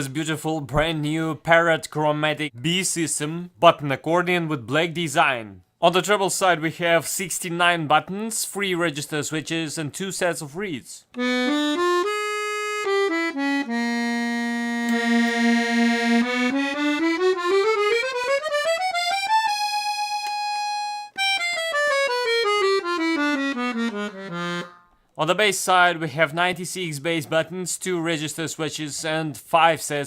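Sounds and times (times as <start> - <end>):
accordion notes and scales: 11.1 - 25.1.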